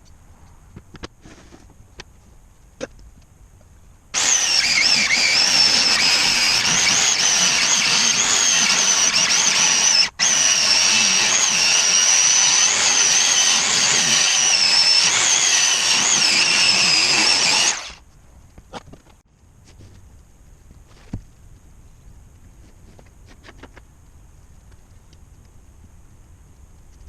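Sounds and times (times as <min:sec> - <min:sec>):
power tool motor whining: 0:04.2 - 0:18.0.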